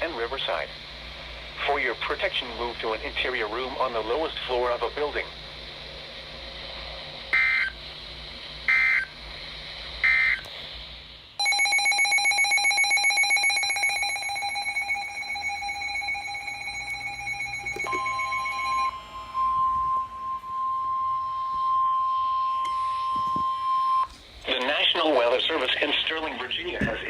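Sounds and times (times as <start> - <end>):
steady alarm tone: 0.0 - 10.5, 11.4 - 24.2
rapidly pulsing electronic beep: 7.3 - 7.9, 11.4 - 24.0.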